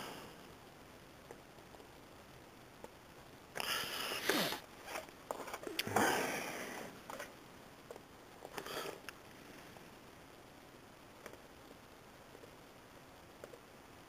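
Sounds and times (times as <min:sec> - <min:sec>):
person breathing and sniffing: 0:03.6 - 0:05.0
faint clicks: 0:11.2 - 0:12.6, 0:13.4 - 0:13.7.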